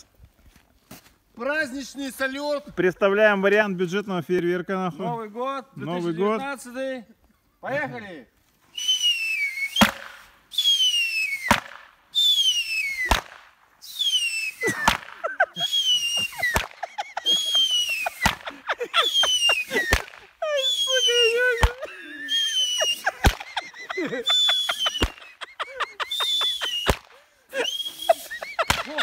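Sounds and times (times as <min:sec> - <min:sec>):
fireworks whistling: 0:08.7 - 0:29.0
fireworks bangs: 0:09.7 - 0:13.5, 0:14.6 - 0:18.6, 0:19.2 - 0:20.3, 0:21.5 - 0:21.9, 0:22.8 - 0:23.7, 0:24.6 - 0:25.3, 0:26.4 - 0:27.2.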